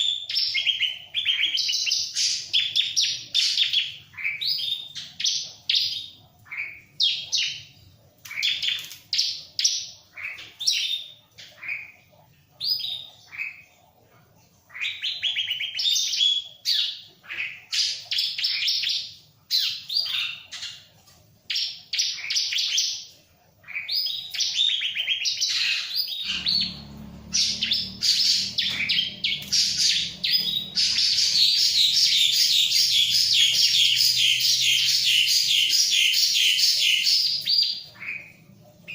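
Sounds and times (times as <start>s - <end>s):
bird singing sharp trills: 23.8s - 38.9s
low hum: 26.2s - 35.8s.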